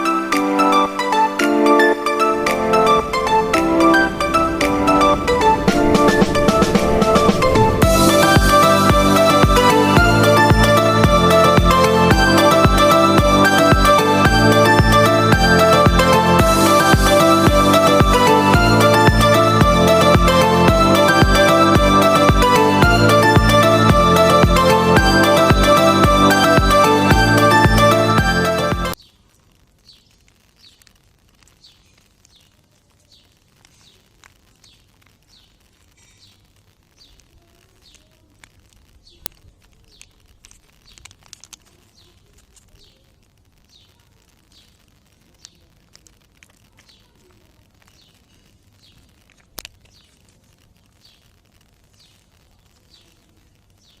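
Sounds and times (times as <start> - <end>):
sharp clicks: 37.8 - 42.8.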